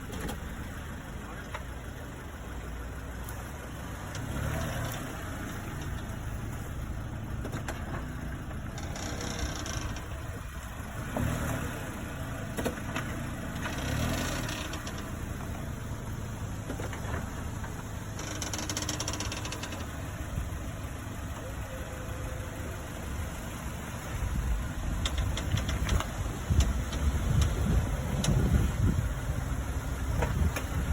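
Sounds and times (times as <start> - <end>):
car engine rumbling: 0.0 - 30.9
short clicks or creaks: 8.7 - 10.2, 13.6 - 15.1, 18.1 - 20.0, 25.0 - 27.6.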